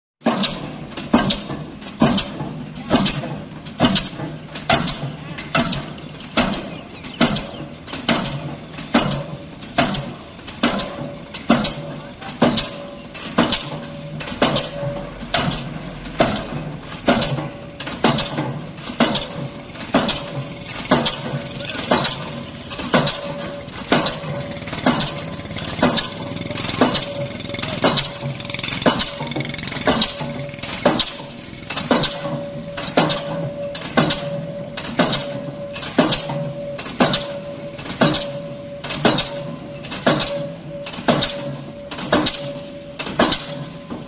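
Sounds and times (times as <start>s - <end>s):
machine hum: 0.7s - 44.0s
heavy ringing strikes: 12.7s - 44.0s.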